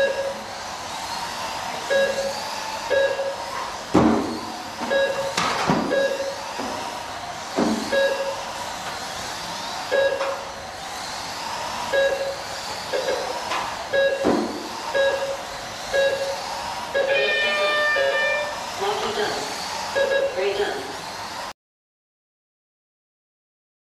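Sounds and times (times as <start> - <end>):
short electronic beeps: 0.0 - 0.4, 1.9 - 2.3, 2.9 - 3.4, 4.9 - 6.4, 7.9 - 8.4, 9.9 - 10.4, 12.0 - 12.4, 14.0 - 14.3, 14.9 - 15.4, 16.0 - 16.4, 17.0 - 18.6, 20.0 - 20.6
rc truck motors whining: 0.0 - 21.5.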